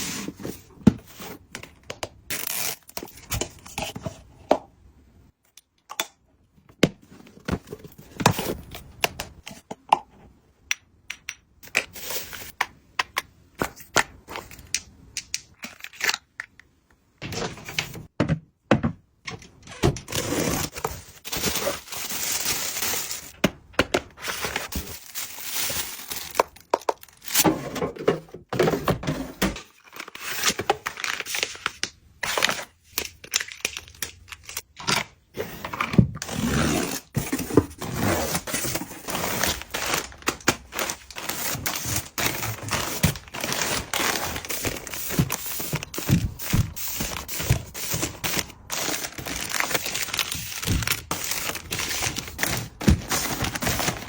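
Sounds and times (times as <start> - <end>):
packaging rustling and tearing: 20.1 - 23.4, 24.2 - 27.4, 36.2 - 54.0.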